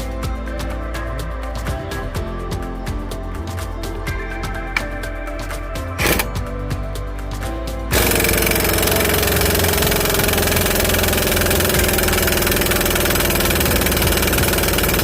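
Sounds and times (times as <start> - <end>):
motor running steadily: 7.9 - 15.0.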